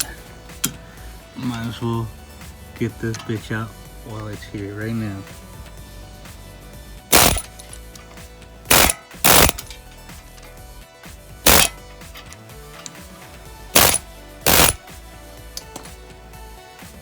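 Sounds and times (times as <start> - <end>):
pneumatic air hammer bursts: 7.1 - 7.7, 8.7 - 9.8, 11.4 - 11.8, 13.8 - 14.8.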